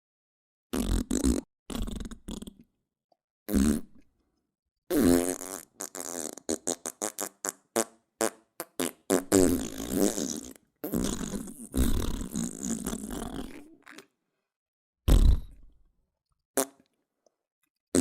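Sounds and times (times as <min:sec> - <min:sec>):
fart sound effects: 0:00.7 - 0:02.5, 0:03.5 - 0:04.0, 0:04.9 - 0:13.6, 0:15.1 - 0:15.7.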